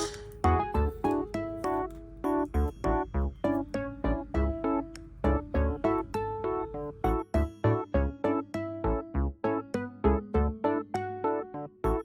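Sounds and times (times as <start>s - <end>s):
bouncy electric piano music: 0.0s - 12.0s.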